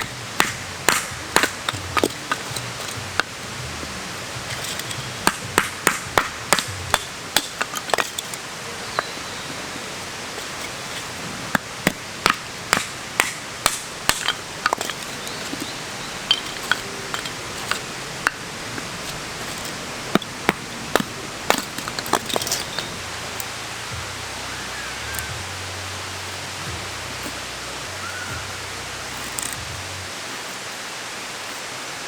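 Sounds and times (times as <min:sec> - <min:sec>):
steady background hiss: 0:00.0 - 0:32.0
tool striking knocks: 0:04.4 - 0:09.2, 0:10.3 - 0:23.4.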